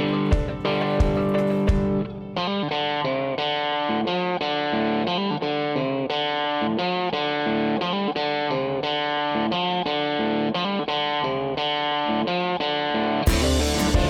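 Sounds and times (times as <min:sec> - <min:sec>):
heavy low end music: 0:00.0 - 0:02.4, 0:13.3 - 0:14.0
electric guitar melody with effects: 0:00.0 - 0:14.0.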